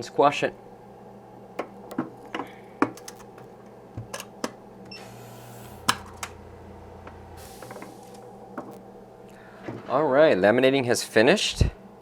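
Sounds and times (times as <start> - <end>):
machine hum: 0.0 - 10.0
air hissing: 7.3 - 8.8.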